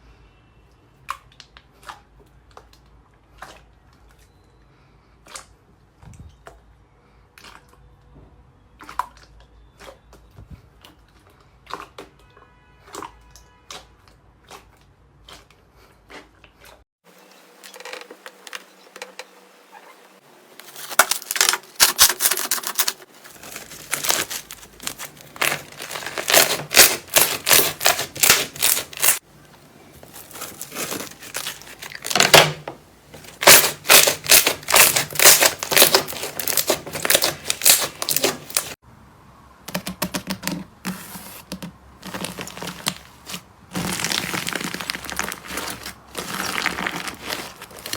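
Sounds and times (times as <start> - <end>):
slime squeezed by hand crackling: 23.5 - 29.2, 33.3 - 38.8, 42.1 - 47.9.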